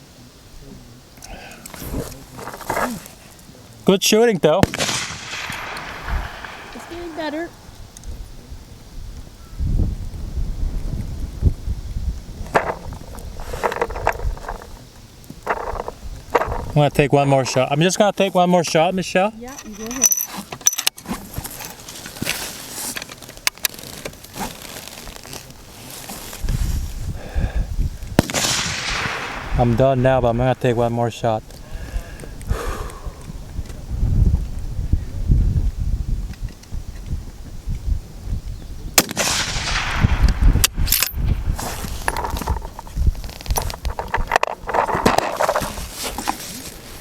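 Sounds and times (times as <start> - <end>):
rustling and handling noise: 1.7 - 3.8, 12.5 - 18.3, 19.4 - 27.1, 40.9 - 47.0
sharp cracks: 4.4 - 8.2, 15.4 - 16.8, 28.1 - 31.6, 39.0 - 45.6
rifle shot: 4.6 - 7.7, 28.2 - 30.9, 39.0 - 41.5
wind rumble on microphone: 5.0 - 17.1, 26.2 - 47.0.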